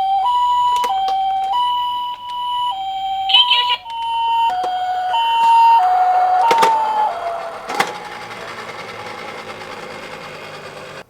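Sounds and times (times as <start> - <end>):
toy siren sliding down: 0.0 - 11.0
low mechanical whirr: 2.6 - 11.0
toy click: 3.3 - 7.1.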